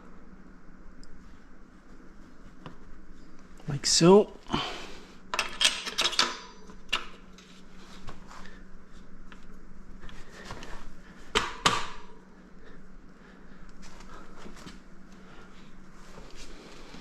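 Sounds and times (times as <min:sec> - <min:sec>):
metal tools knocking and clinking: 0:05.3 - 0:07.0.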